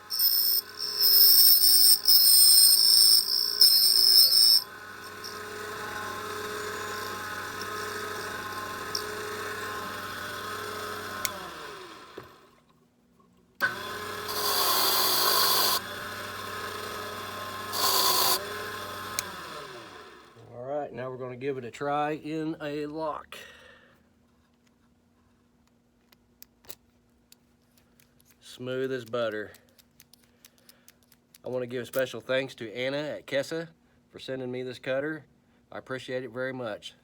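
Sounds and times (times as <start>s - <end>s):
high-pitched cutting whine: 0.0s - 10.2s
key cutting machine motor: 0.0s - 12.4s, 13.6s - 20.2s.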